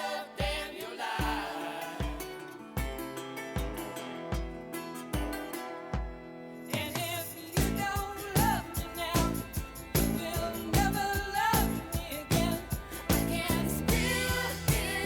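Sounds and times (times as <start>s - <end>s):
person singing: 0.0s - 2.6s, 6.8s - 15.0s
steady drum beat: 0.0s - 4.6s, 6.8s - 15.0s.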